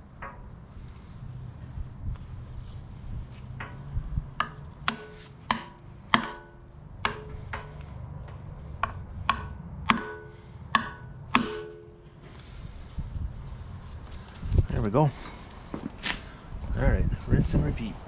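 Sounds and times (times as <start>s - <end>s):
hammer blows on metal: 3.6s - 12.3s.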